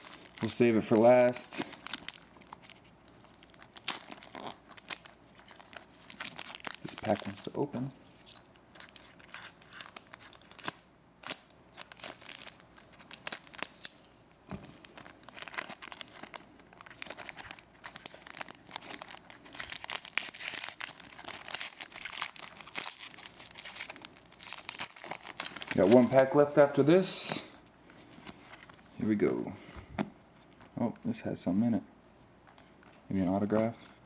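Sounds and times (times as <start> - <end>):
wrapper tearing and crinkling: 0.0 - 14.1, 14.8 - 26.2.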